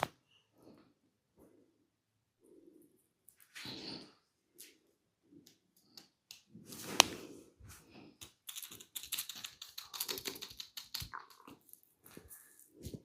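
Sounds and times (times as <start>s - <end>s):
soft massage strokes: 6.5s - 8.2s.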